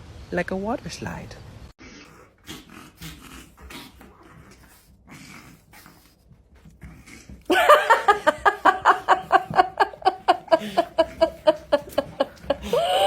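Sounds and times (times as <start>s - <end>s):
person laughing hard: 7.5s - 13.0s.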